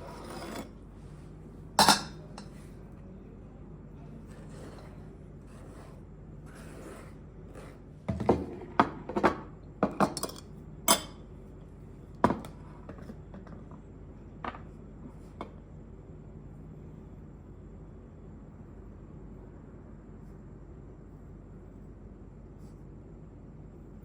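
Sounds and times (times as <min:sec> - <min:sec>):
dishes and utensils clinking: 0:01.8 - 0:02.6.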